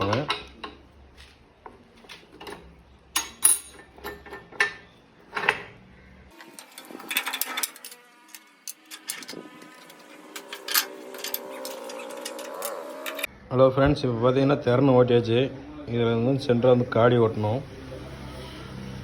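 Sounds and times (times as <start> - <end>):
metal tools clinking: 1.6 - 5.8, 6.4 - 13.3.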